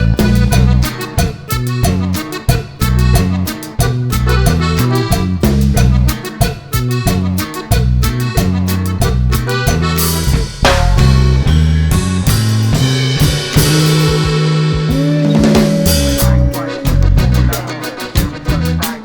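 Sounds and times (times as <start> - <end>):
upbeat instrumental music: 0.0 - 19.0.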